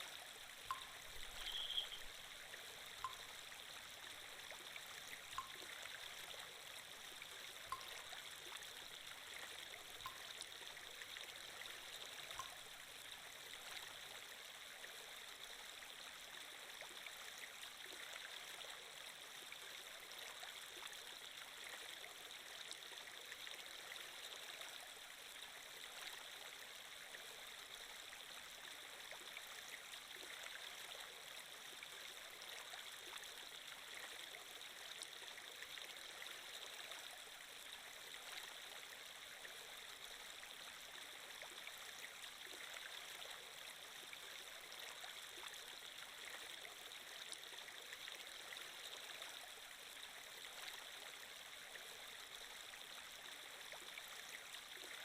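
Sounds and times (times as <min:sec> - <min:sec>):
steady rush of water: 0:00.0 - 0:19.6.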